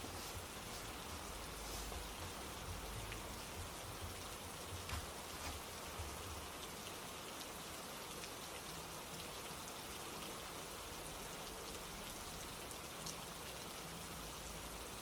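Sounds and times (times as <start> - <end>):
steady rain hiss: 0.0 - 15.0
raindrop ticks: 0.3 - 9.3.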